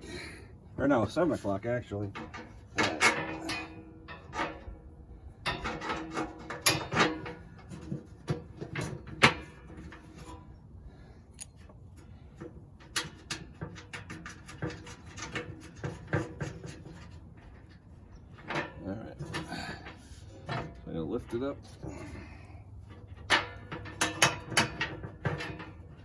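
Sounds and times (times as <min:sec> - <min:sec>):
metal tools clinking: 0:02.2 - 0:04.8.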